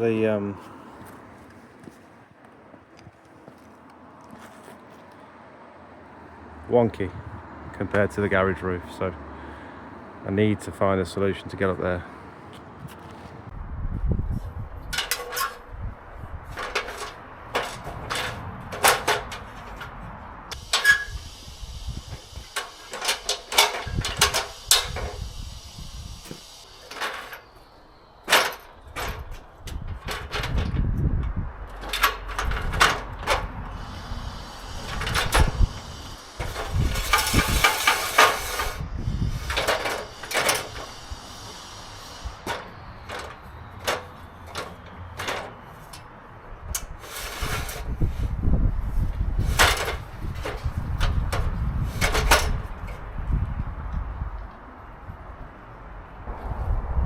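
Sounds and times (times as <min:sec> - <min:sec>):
rattling: 0:31.7 - 0:46.1.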